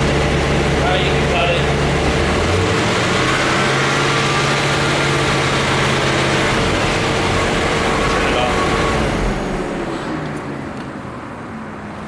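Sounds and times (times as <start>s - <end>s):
car engine idling with misfire: 0.0s - 10.6s.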